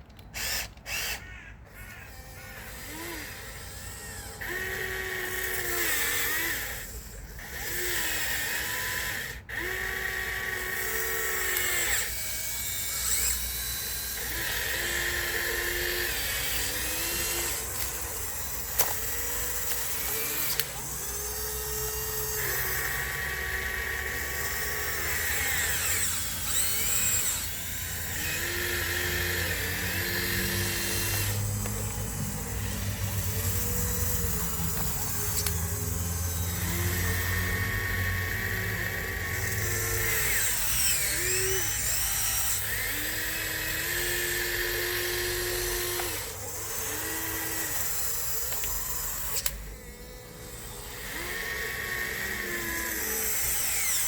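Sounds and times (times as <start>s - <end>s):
sharp clicks: 0.0s - 2.0s, 28.1s - 36.0s
electric motors whining: 0.0s - 54.0s.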